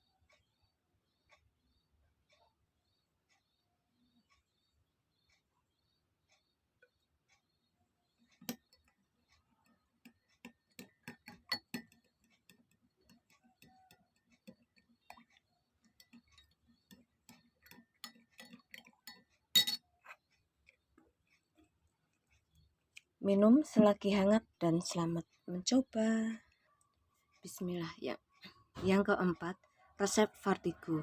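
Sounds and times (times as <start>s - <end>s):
spoon clinking in a cup: 10.5s - 12.6s, 16.0s - 19.9s.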